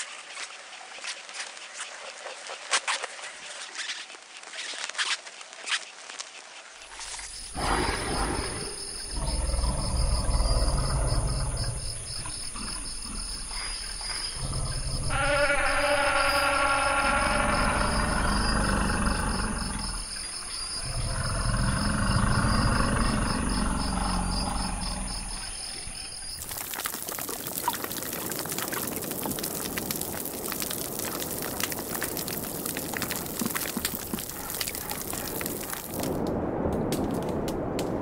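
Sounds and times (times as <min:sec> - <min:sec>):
crackling hiss with fine clicks: 0:00.0 - 0:15.2, 0:26.2 - 0:38.0.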